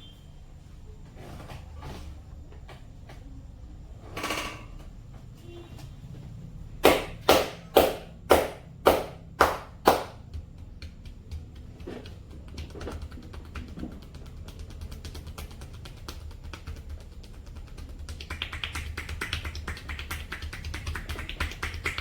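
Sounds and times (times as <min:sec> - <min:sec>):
percussive massage strikes: 0:06.8 - 0:22.0.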